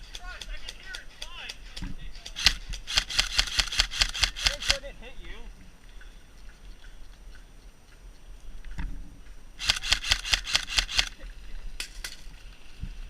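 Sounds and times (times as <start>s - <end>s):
airsoft gun shots: 2.4s - 4.8s, 9.6s - 11.1s.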